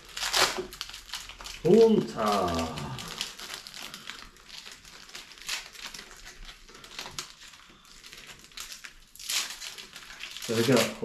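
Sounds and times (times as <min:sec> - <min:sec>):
foil wrappers crinkling: 0:00.0 - 0:11.0.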